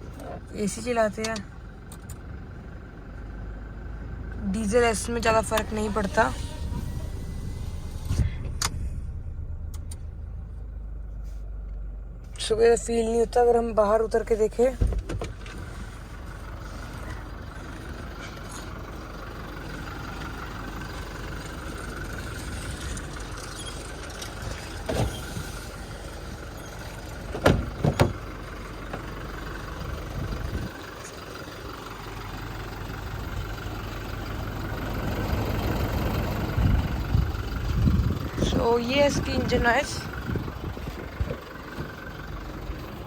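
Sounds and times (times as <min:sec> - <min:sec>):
diesel engine idling: 0:00.0 - 0:43.0.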